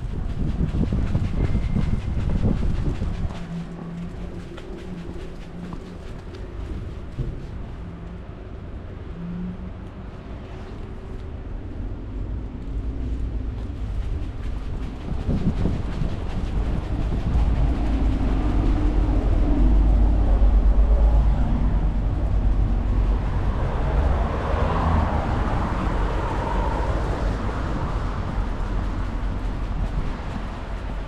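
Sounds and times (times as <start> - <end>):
city street traffic: 0.0 - 31.0
heavy vehicle passing: 16.6 - 31.0.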